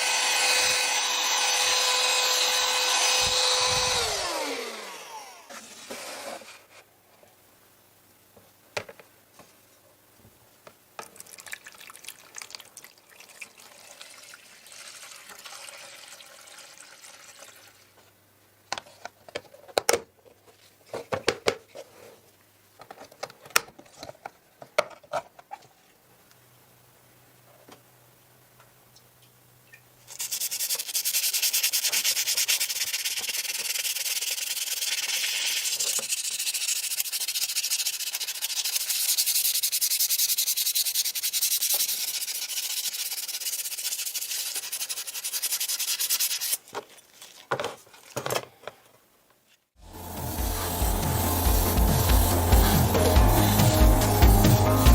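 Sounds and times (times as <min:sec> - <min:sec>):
power sander running: 0:00.0 - 0:06.2, 0:49.8 - 0:54.9
hand rubbing and scraping: 0:49.5 - 0:54.9.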